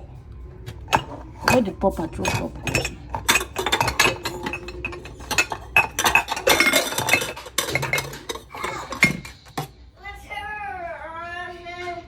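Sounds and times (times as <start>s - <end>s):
dishes and cups clinking: 0.7s - 9.8s.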